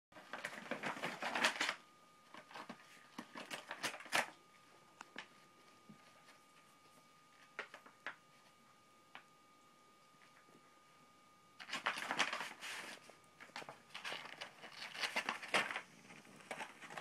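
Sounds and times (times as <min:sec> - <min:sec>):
paper bag rustling and crinkling: 0:00.2 - 0:04.4, 0:11.6 - 0:17.0.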